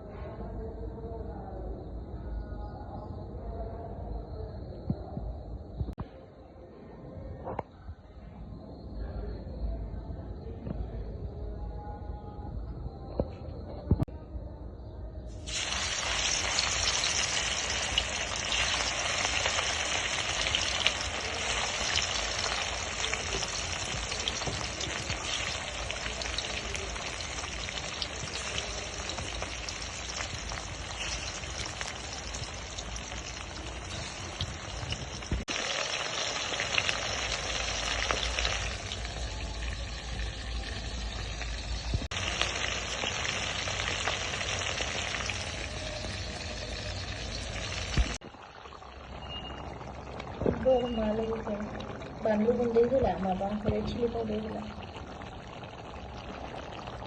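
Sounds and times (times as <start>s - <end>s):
food sizzling in hot oil: 15.4s - 57.0s.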